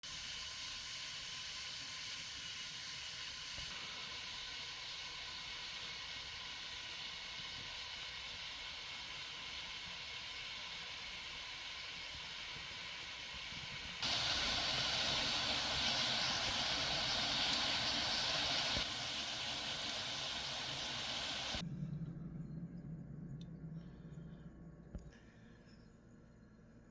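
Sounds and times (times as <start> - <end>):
steady hiss: 0.0 - 21.6
faint low hum: 21.5 - 26.9.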